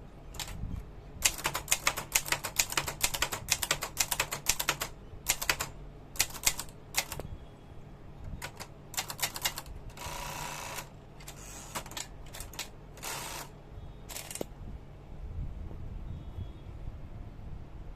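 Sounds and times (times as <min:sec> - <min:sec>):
typewriter keystroke clacks: 0:00.4 - 0:00.6, 0:01.2 - 0:07.2, 0:08.4 - 0:10.1, 0:10.8 - 0:13.5, 0:14.1 - 0:14.5
typewriter scraping: 0:01.2 - 0:07.2, 0:08.4 - 0:13.5, 0:14.1 - 0:14.5.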